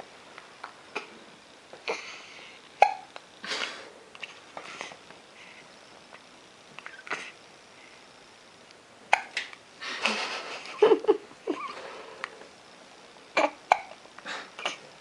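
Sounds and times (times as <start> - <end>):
baby hiccuping: 2.8 - 3.1, 9.1 - 9.4, 13.4 - 14.0.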